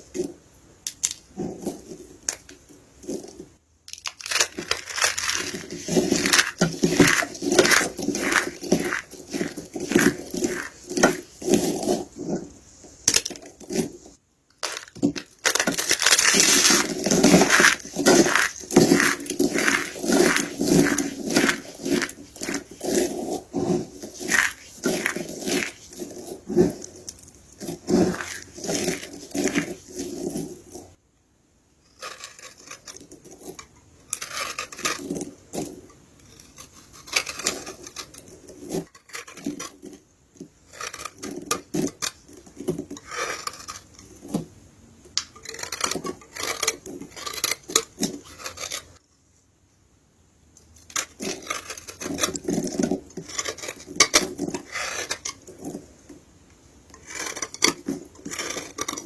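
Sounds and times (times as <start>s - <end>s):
soap crunching and crackling: 0.9s - 31.0s, 32.0s - 40.0s, 40.7s - 44.5s, 45.2s - 48.9s, 50.9s - 56.2s, 56.9s - 59.0s.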